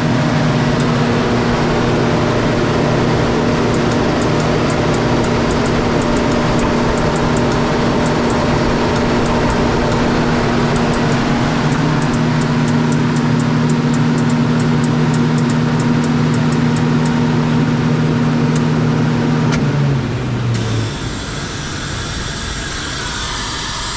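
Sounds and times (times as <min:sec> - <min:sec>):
air compressor droning: 0:00.0 - 0:23.9
light fast ticking: 0:01.7 - 0:17.2.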